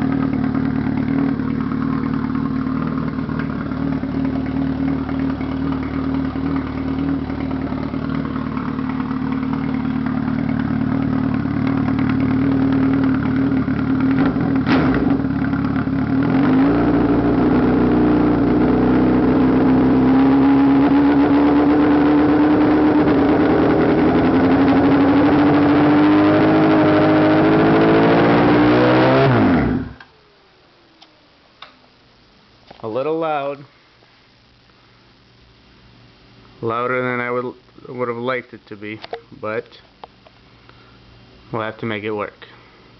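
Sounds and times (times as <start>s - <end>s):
motorcycle engine idling and revving: 0.0s - 30.1s.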